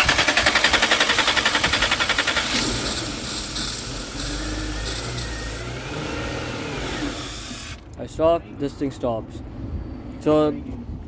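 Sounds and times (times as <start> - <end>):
car engine cranking: 0.0 - 8.0
car engine running: 0.0 - 8.0.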